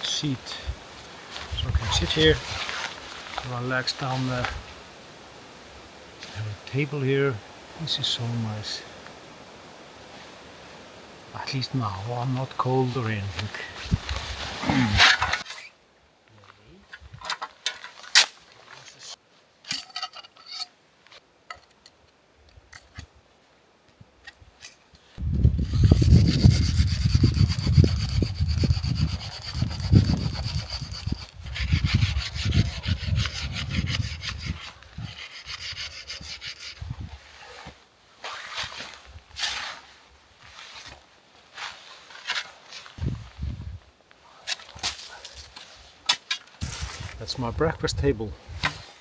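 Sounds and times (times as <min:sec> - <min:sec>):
loud close rubbing and scraping: 0:13.4 - 0:15.7, 0:25.6 - 0:39.9.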